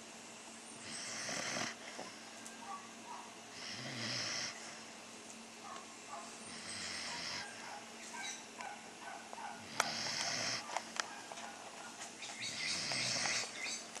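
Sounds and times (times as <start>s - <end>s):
pet snoring: 0.8s - 2.2s, 3.5s - 4.8s, 6.5s - 7.6s, 9.5s - 10.7s, 12.4s - 13.8s.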